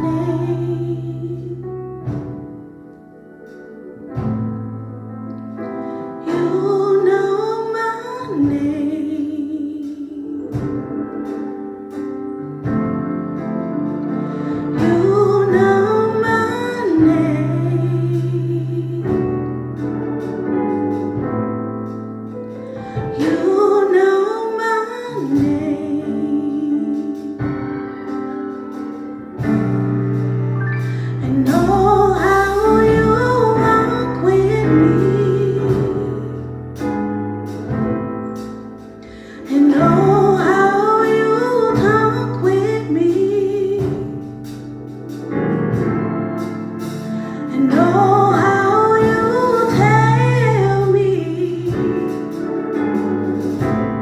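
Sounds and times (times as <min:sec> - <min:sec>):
sustained piano chords: 0:00.0 - 0:54.0
person singing: 0:06.0 - 0:12.1, 0:14.2 - 0:19.6, 0:22.7 - 0:29.8, 0:30.6 - 0:36.6, 0:39.0 - 0:44.3, 0:47.1 - 0:53.4.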